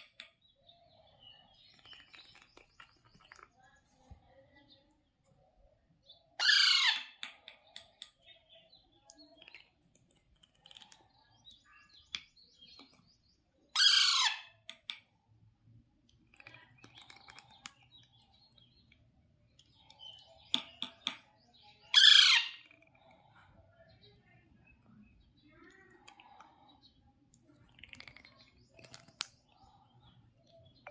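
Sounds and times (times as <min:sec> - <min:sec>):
parakeet harsh calls: 0:06.4 - 0:07.2, 0:13.8 - 0:14.5, 0:21.9 - 0:22.6.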